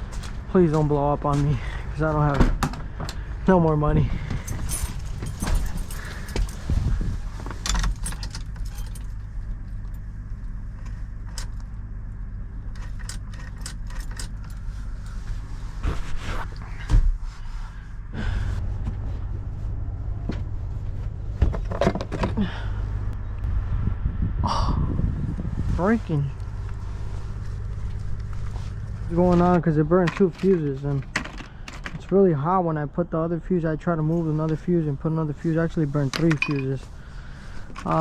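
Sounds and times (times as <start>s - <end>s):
low engine hum: 0.0s - 38.0s
keys jangling in ignition: 4.1s - 11.7s, 12.7s - 15.2s, 28.1s - 32.1s.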